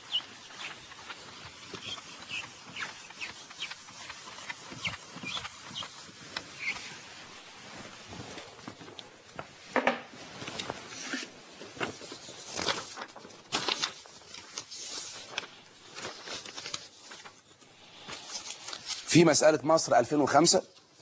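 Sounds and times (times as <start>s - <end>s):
scratchy writing strokes: 0.0s - 8.0s.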